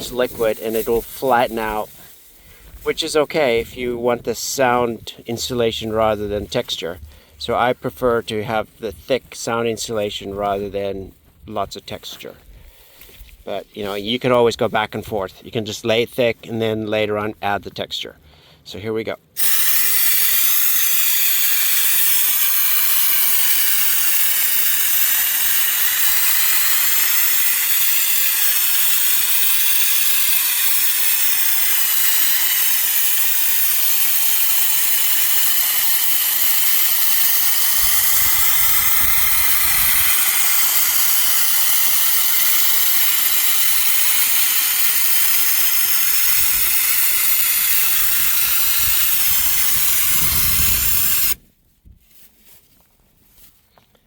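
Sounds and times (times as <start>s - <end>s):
spray gun hissing: 0.0s - 4.8s, 19.4s - 51.4s.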